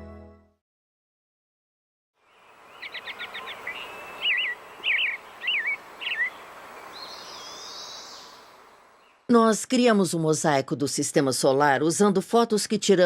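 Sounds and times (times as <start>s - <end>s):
birds singing: 2.2s - 9.4s
outdoor background noise: 2.2s - 13.0s.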